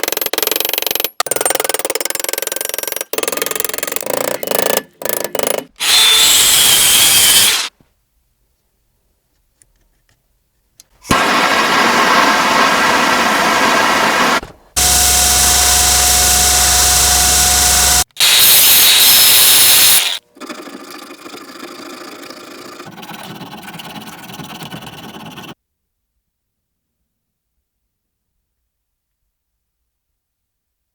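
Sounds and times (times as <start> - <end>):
loud grinding noise: 5.8 - 7.7, 11.1 - 23.1
machine hum with held tone: 14.8 - 18.1.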